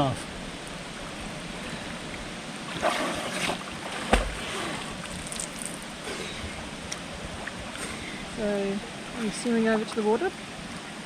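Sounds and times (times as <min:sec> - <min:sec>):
water pouring into rock pool: 0:02.8 - 0:06.0
thump: 0:04.1 - 0:04.4.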